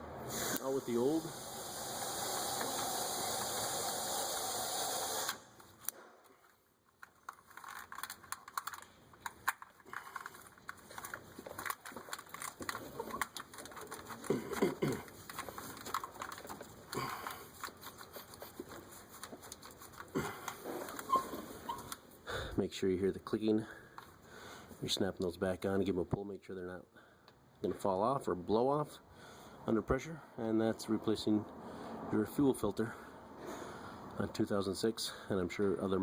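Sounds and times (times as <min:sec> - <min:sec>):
plastic fittings clicking and rattling: 0:07.0 - 0:22.0.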